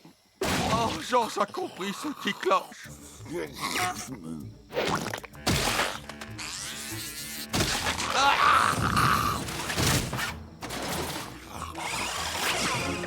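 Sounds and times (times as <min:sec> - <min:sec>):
music: 0:02.8 - 0:13.0.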